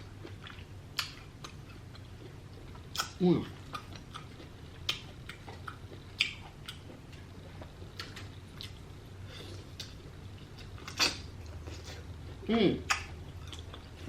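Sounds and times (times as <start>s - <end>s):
chewing and wet mouth sounds: 0.0s - 14.0s
mouth clicks and smacks: 6.2s - 6.8s, 12.8s - 13.7s.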